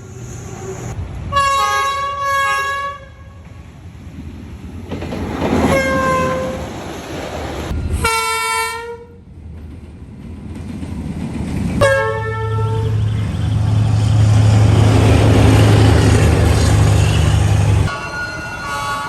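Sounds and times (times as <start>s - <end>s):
locomotive horn blasts: 1.3s - 3.5s, 5.7s - 6.6s, 8.0s - 9.2s, 11.8s - 13.7s, 15.1s - 19.0s
locomotive engine drone: 11.2s - 19.0s.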